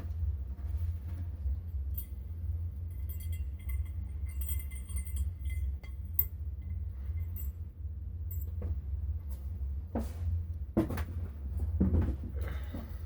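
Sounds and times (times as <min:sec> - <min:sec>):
steady low rumble: 0:00.0 - 0:13.0
small metal parts clinking: 0:02.9 - 0:07.6.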